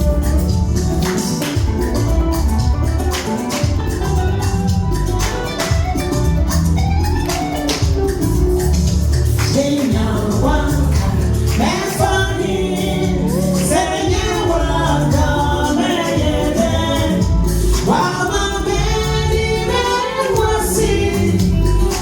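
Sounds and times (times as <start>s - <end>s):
band with strong bass line: 0.0s - 22.0s
voices singing gospel: 9.3s - 22.0s.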